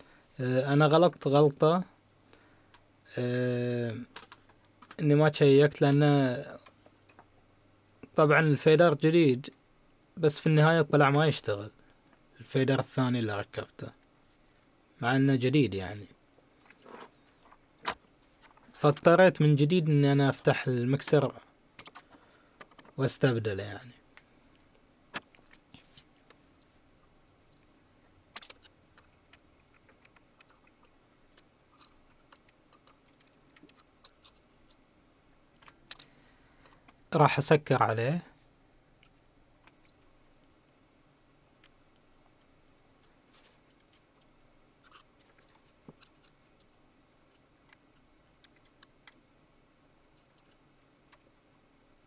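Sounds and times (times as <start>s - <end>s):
faint clicks and taps of small parts: 2.6s - 2.9s, 4.0s - 5.0s, 6.6s - 8.2s
faint clicks and taps: 4.0s - 5.1s, 6.5s - 8.2s, 41.6s - 49.2s.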